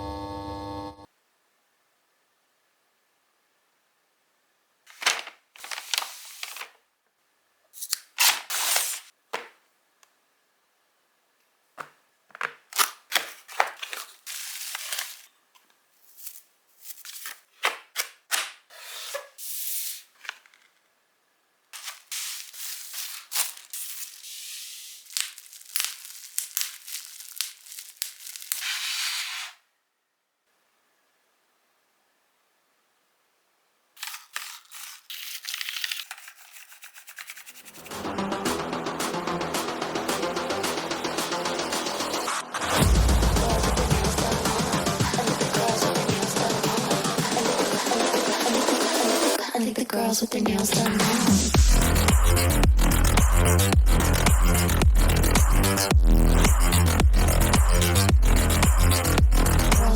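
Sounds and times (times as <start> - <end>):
packaging rustling and tearing: 4.9 - 6.8, 7.8 - 9.1, 12.3 - 15.4, 16.0 - 18.2, 21.8 - 29.6, 34.0 - 37.9.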